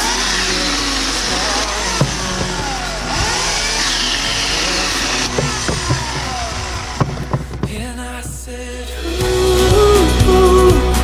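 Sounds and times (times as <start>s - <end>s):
chainsaw revving: 0.0s - 7.9s
background music: 0.0s - 11.0s.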